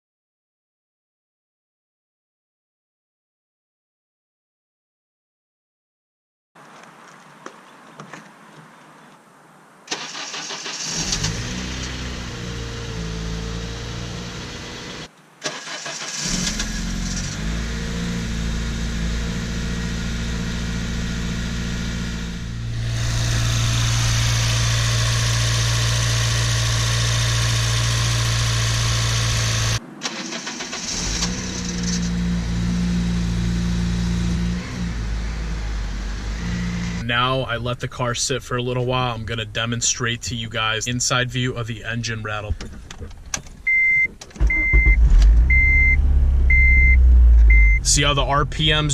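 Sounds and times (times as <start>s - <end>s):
engine rattle on startup: 9.9s - 12.0s, 15.4s - 17.4s, 22.8s - 32.1s, 42.6s - 47.6s
car engine starting and idling: 9.9s - 48.9s.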